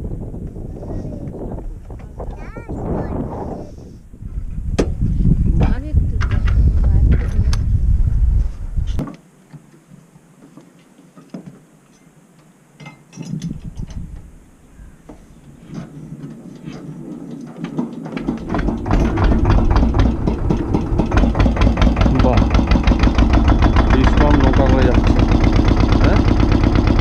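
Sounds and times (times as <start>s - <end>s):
motorboat engine knocking: 18.2s - 27.0s.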